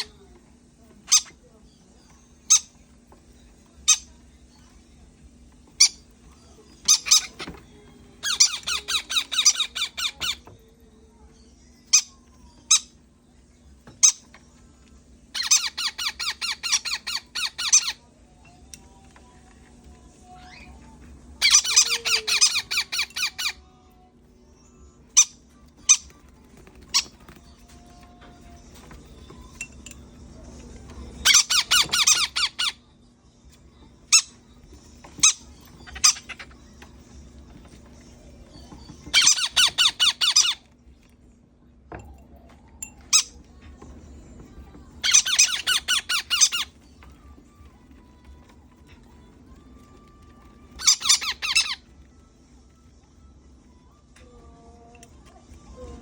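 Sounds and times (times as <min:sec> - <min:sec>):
baby parrot squeaky chirps: 0:01.0 - 0:04.8, 0:05.7 - 0:10.6, 0:11.3 - 0:13.1, 0:13.8 - 0:14.4, 0:15.3 - 0:18.1, 0:20.2 - 0:20.8, 0:21.4 - 0:23.7, 0:24.6 - 0:28.8, 0:30.8 - 0:32.9, 0:33.8 - 0:41.0, 0:43.1 - 0:43.5, 0:45.0 - 0:52.0.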